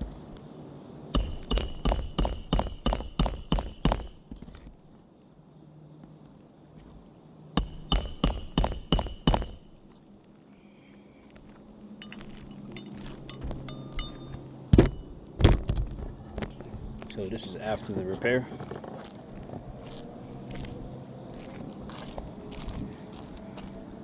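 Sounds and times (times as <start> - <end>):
sharp ringing clinks: 1.2 - 4.4, 7.6 - 9.8, 12.0 - 15.1.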